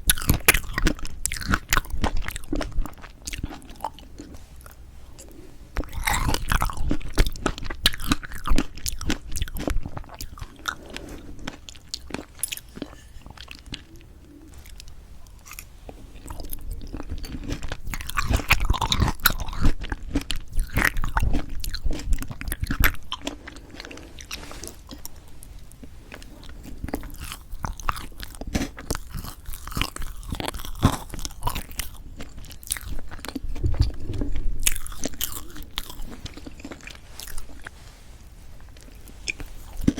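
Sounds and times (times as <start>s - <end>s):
chewing cake with mouth clicks: 0.0s - 37.8s, 38.6s - 39.9s
soft crunches: 20.2s - 39.9s.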